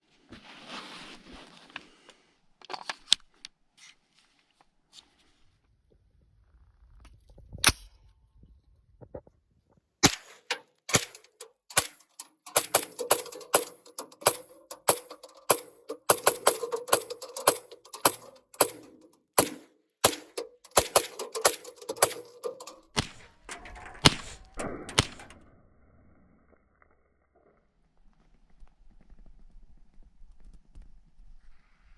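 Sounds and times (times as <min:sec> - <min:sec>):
rapid carbine gunshots: 0:10.0 - 0:23.2.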